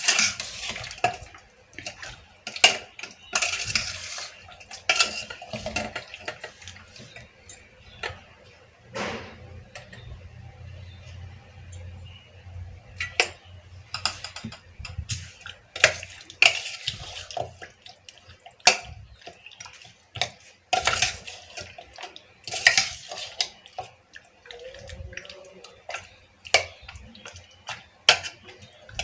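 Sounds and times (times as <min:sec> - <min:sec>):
wet squelching: 0:00.0 - 0:08.3, 0:14.8 - 0:29.0.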